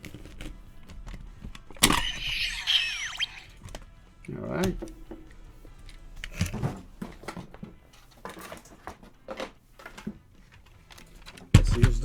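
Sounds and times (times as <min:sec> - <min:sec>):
plastic toy clicks and knocks: 0:00.1 - 0:03.3.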